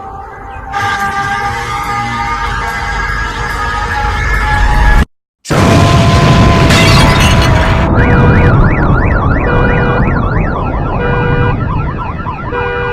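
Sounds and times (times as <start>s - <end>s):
emergency sirens wailing: 0.0s - 12.9s
explosion with long rumble: 5.5s - 10.0s.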